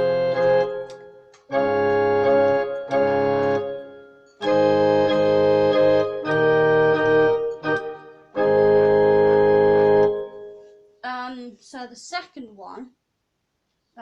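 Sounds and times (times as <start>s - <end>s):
keyboard organ chords: 0.0s - 10.8s.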